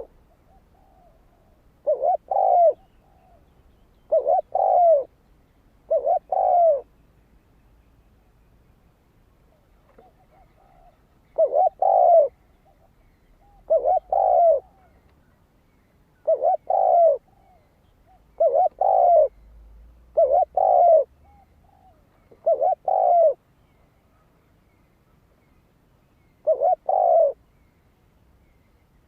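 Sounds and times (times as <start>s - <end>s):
dove cooing: 0.0s - 5.2s, 5.8s - 6.9s, 9.5s - 15.1s, 16.2s - 23.4s, 26.4s - 27.4s.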